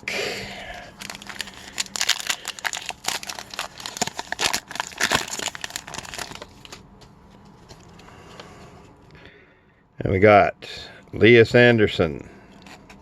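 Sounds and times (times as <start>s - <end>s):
wrapper being torn and crinkled: 0.8s - 6.8s.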